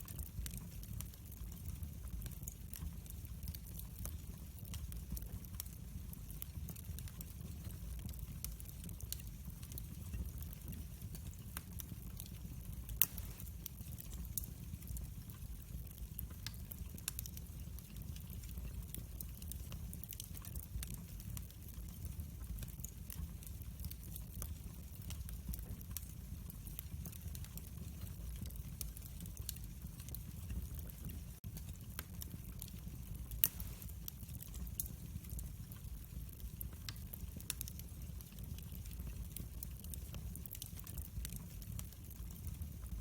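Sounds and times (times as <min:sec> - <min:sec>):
low fire rumble: 0:00.0 - 0:43.0
wood fire crackling: 0:00.0 - 0:43.0
small pops: 0:13.0 - 0:13.5.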